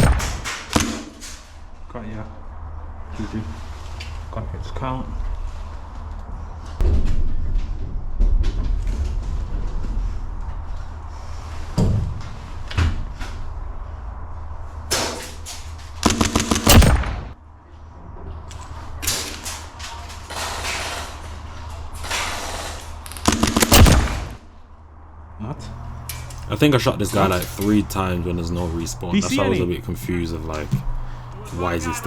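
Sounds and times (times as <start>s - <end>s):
airsoft guns firing: 0.0s - 1.4s, 16.0s - 17.4s, 22.0s - 24.4s.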